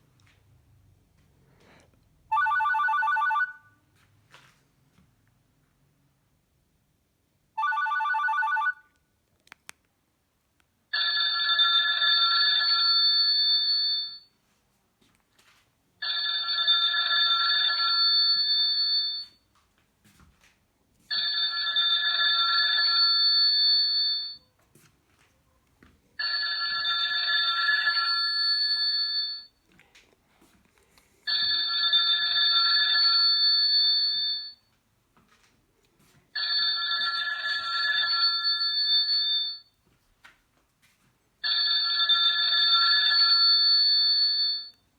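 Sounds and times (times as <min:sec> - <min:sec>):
phone ringtone telephone bell: 0:02.3 - 0:03.7, 0:07.6 - 0:08.9, 0:10.9 - 0:14.3, 0:16.0 - 0:19.4, 0:21.1 - 0:24.5, 0:26.2 - 0:29.6, 0:31.3 - 0:34.7, 0:36.4 - 0:39.8, 0:41.4 - 0:44.8.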